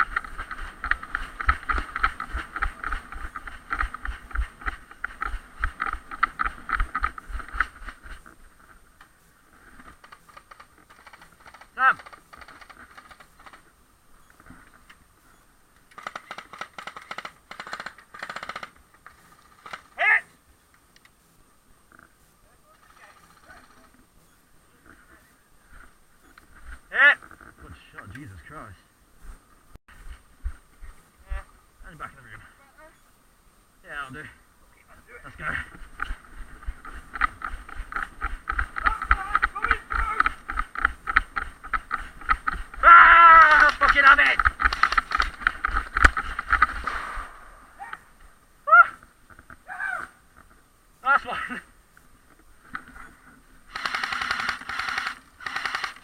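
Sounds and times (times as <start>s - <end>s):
running footsteps with kit rattle: 0.0s - 8.9s, 9.6s - 13.7s, 35.2s - 46.8s
airsoft guns firing: 16.0s - 18.8s, 43.4s - 47.7s, 53.7s - 56.0s.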